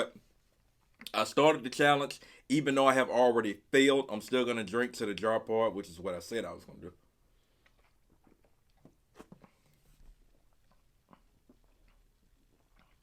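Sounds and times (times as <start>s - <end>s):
faint mouth clicks and swallows: 7.3s - 13.0s.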